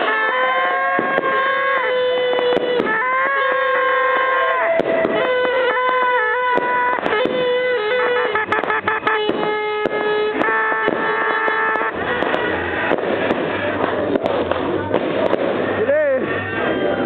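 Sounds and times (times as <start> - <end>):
fireworks popping and crackling: 0.0 - 17.0.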